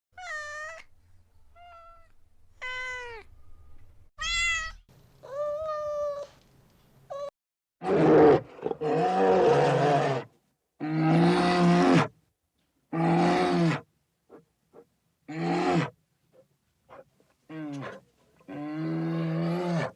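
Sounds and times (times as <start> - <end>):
cat meowing: 0.2 - 0.9, 1.6 - 3.3, 4.2 - 6.3
large animal roaring: 7.8 - 10.2.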